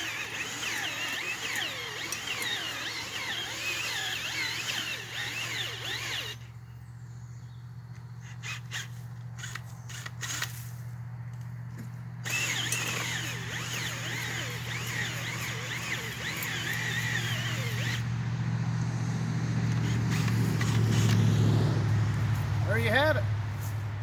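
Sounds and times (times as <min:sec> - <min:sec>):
auger grinding into soil: 0:00.0 - 0:06.4, 0:12.2 - 0:18.1, 0:19.6 - 0:21.6
drill motor humming: 0:00.0 - 0:06.5, 0:12.2 - 0:18.1, 0:19.7 - 0:21.4.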